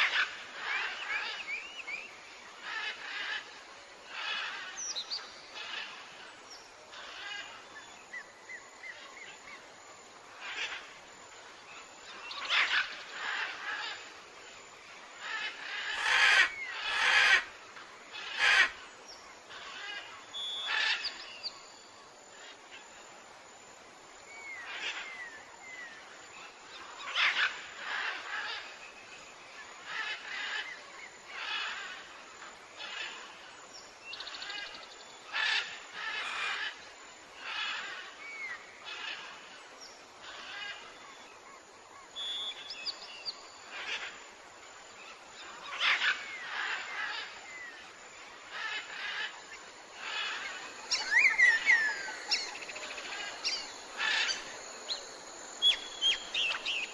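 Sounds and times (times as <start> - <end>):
birds calling: 45.4 - 56.9
bird chirps: 50.0 - 56.9.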